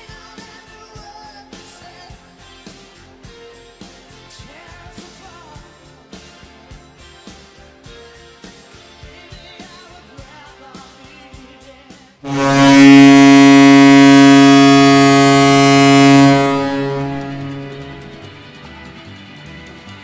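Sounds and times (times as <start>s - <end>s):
faint music with a beat: 0.0s - 13.8s
goal horn blast: 12.3s - 18.5s.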